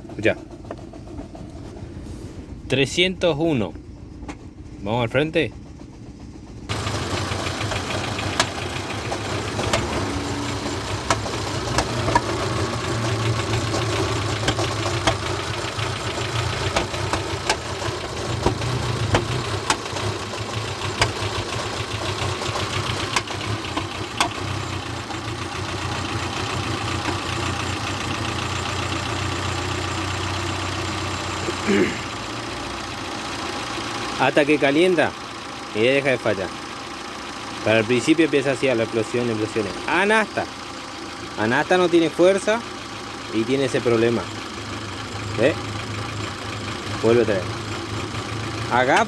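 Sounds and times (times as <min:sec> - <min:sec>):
engine idling unevenly: 0:00.0 - 0:49.0.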